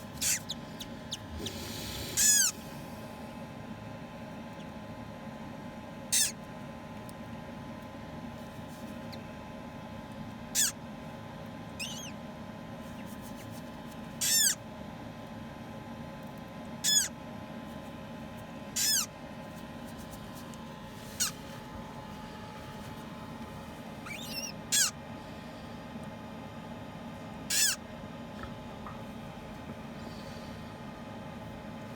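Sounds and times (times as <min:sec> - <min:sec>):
parrot chick peeping: 0:00.0 - 0:02.7, 0:06.1 - 0:06.4, 0:10.5 - 0:10.8, 0:11.8 - 0:12.2, 0:14.2 - 0:14.6, 0:16.8 - 0:17.1, 0:18.7 - 0:19.1, 0:21.2 - 0:21.4, 0:24.0 - 0:25.0, 0:27.5 - 0:27.8
steady low hum: 0:00.0 - 0:31.9.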